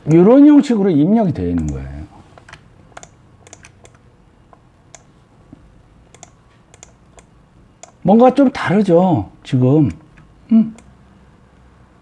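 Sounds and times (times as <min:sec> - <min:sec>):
faint low hum: 0:00.0 - 0:12.0
computer clicking: 0:01.5 - 0:05.1, 0:06.1 - 0:08.1.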